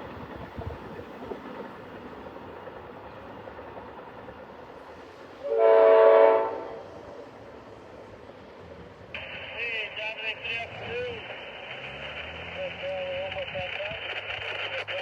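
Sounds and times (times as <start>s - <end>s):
train rumbling: 0.0s - 15.0s
train horn blast: 5.4s - 7.0s.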